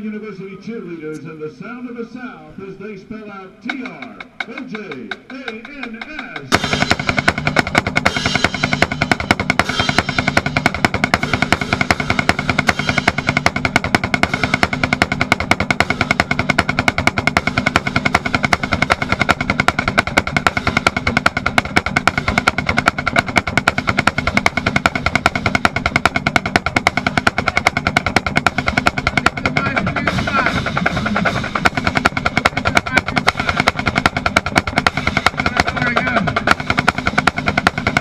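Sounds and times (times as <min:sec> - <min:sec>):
marching band playing: 0:00.8 - 0:38.0
snare drum beating fast strokes: 0:03.7 - 0:38.0.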